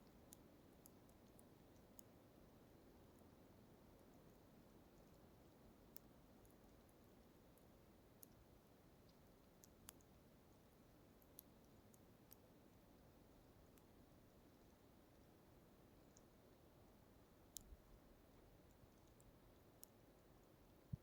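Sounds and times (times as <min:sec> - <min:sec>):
faint background hiss: 0:00.0 - 0:21.0
tiny sharp clicks: 0:03.0 - 0:14.0.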